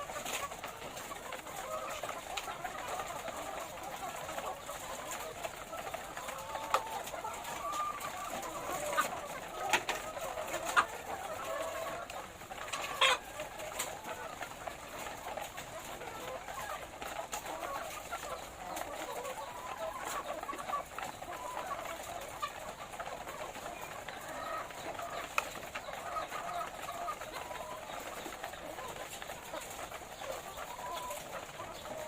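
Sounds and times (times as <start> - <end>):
hens clucking: 0.0 - 32.0.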